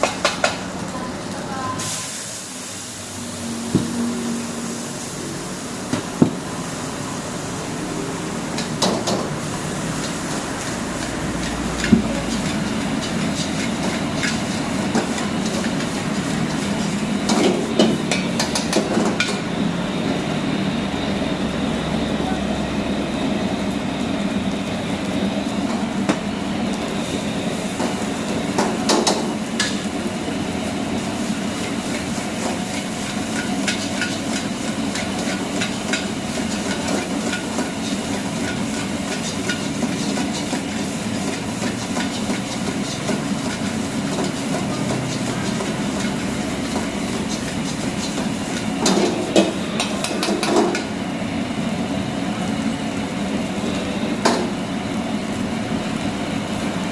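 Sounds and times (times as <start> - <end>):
frying hiss: 0.0 - 56.9
metal spatula scraping a wok: 10.1 - 17.2, 32.7 - 50.4.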